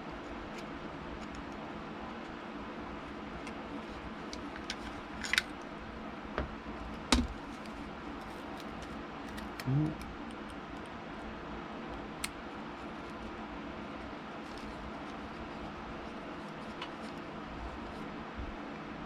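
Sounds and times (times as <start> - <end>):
low background hum: 0.0 - 19.0.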